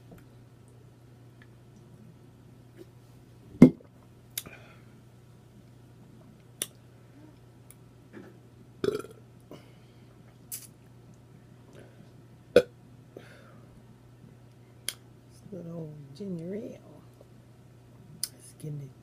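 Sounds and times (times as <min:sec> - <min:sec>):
woman burping: 0:08.8 - 0:09.2.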